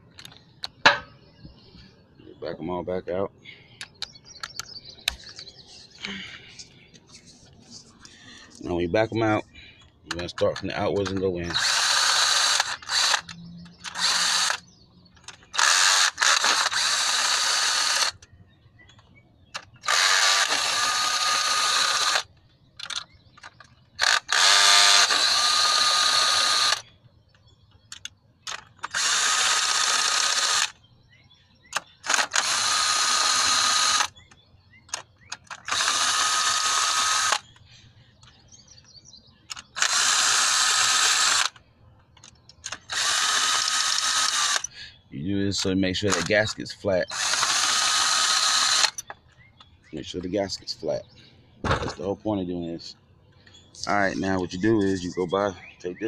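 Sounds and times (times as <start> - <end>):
cordless power tool running: 11.6 - 14.6, 15.5 - 18.2, 19.6 - 22.3, 24.0 - 26.8, 28.8 - 30.7, 31.8 - 34.1, 35.5 - 37.5, 39.5 - 41.6, 42.6 - 44.7, 47.1 - 49.0.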